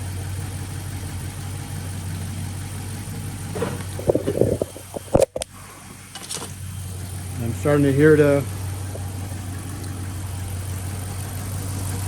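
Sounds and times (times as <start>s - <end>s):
car engine idling: 0.0s - 12.0s
clatter and knocks: 3.5s - 5.5s.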